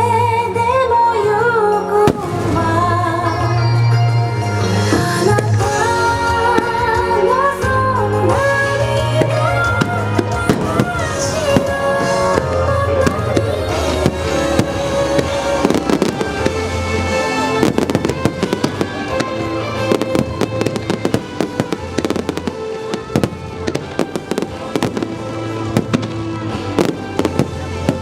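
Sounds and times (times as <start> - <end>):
loud music: 2.0 - 28.0
fireworks bursting and crackling: 2.1 - 3.5, 8.3 - 28.0.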